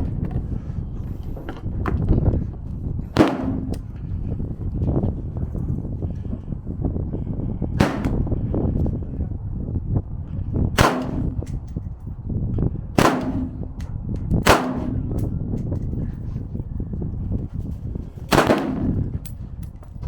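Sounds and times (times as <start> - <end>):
loud gunshots with echo: 3.2 - 3.8, 7.8 - 8.4, 10.8 - 11.4, 13.0 - 13.8, 14.4 - 15.2, 18.3 - 19.1.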